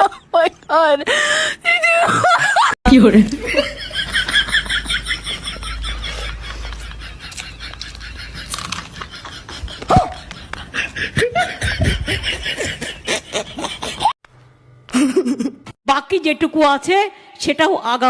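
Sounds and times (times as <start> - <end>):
people laughing: 1.8 - 14.2.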